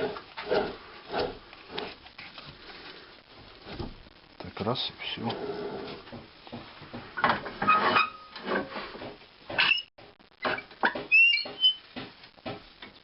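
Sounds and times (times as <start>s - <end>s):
short squeaks: 10.5s - 11.8s.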